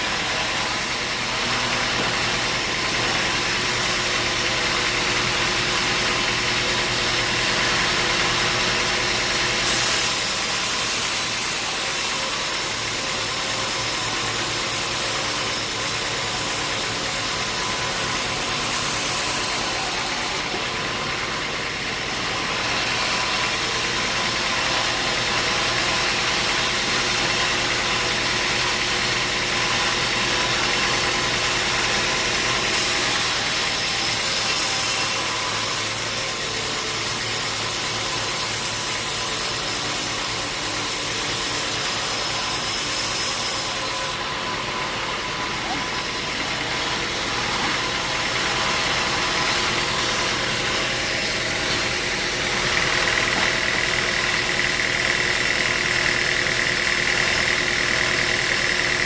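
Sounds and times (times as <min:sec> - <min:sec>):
loud machinery hiss: 0:07.0 - 0:28.3, 0:29.8 - 0:59.0
motor hum: 0:43.4 - 0:55.6.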